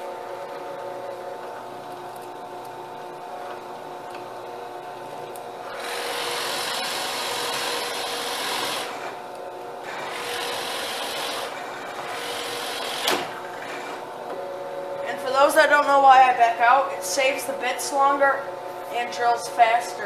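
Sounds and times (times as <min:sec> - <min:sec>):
power drill grinding into wood: 0:05.6 - 0:09.2, 0:09.8 - 0:14.1.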